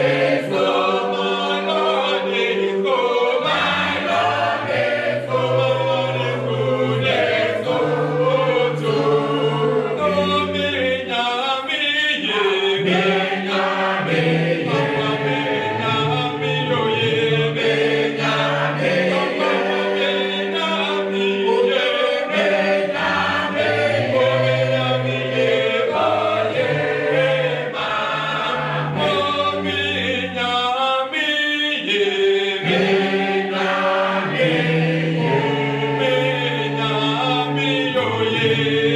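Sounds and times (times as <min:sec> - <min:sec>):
choir singing a hymn: 0:00.0 - 0:38.9.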